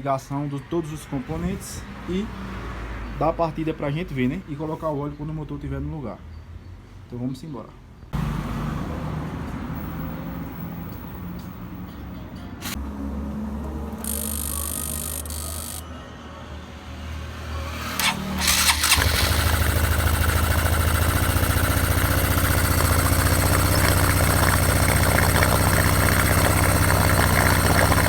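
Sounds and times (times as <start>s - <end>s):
starter clicks: 14.0s - 15.9s, 18.0s - 28.0s
motorcycle engine idling: 18.0s - 28.0s.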